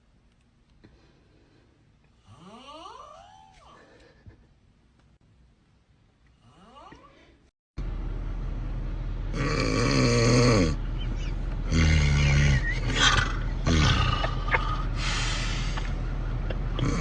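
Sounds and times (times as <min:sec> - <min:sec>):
loud rasping snoring: 0:09.3 - 0:10.8, 0:11.7 - 0:14.9, 0:16.8 - 0:17.0.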